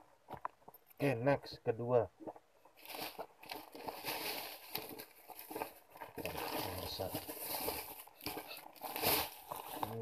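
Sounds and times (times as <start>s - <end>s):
packaging rustling: 2.8s - 10.0s.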